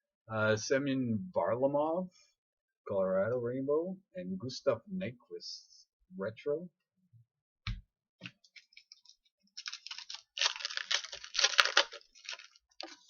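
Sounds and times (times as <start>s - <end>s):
foil wrapper tearing and crinkling: 8.5s - 13.0s.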